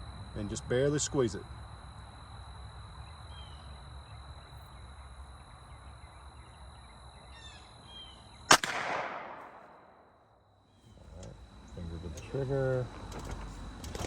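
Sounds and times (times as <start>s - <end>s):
faint bird chirps: 2.9s - 8.5s
pistol shot with echo: 8.5s - 10.0s.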